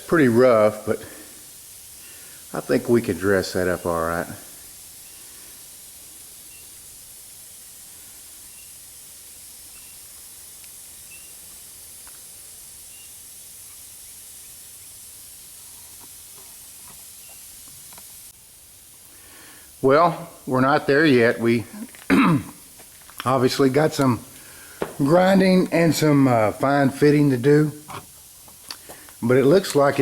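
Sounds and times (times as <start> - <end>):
high hiss: 0.0 - 30.0
faint taps: 24.8 - 25.0.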